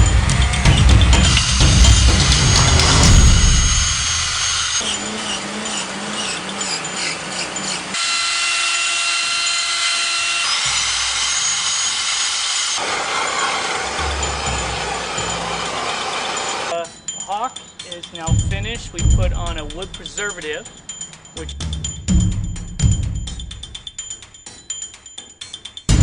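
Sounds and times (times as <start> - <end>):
power carving tool on wood: 0.0 - 16.7.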